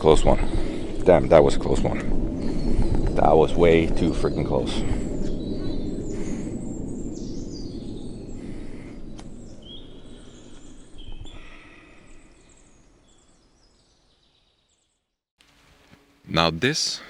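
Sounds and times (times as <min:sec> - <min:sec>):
low forest background noise: 0:15.4 - 0:17.0.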